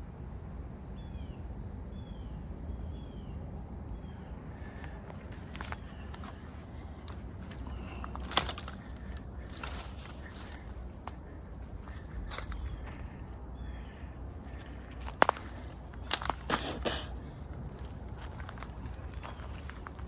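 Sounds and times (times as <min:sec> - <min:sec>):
insect drone: 0:00.0 - 0:20.0
sharp crunches: 0:04.8 - 0:13.2, 0:14.5 - 0:20.0.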